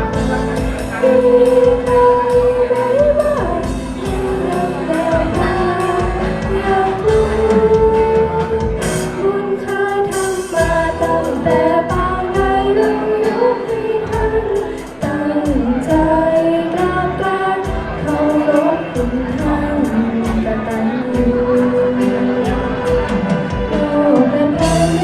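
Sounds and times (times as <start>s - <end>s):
steady beat: 0.0s - 9.2s
person singing a melody: 0.0s - 25.0s.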